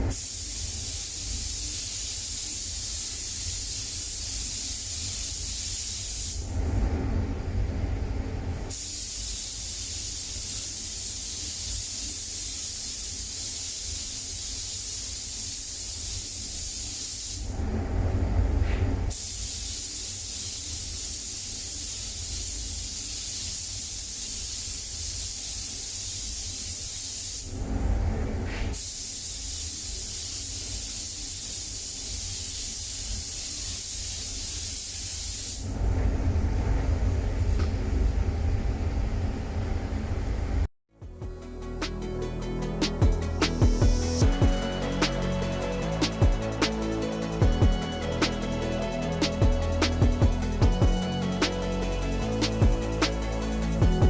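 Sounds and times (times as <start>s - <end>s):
paint spray hissing: 0.0s - 6.4s, 8.7s - 17.5s, 19.1s - 27.5s, 28.8s - 35.6s, 42.7s - 54.0s.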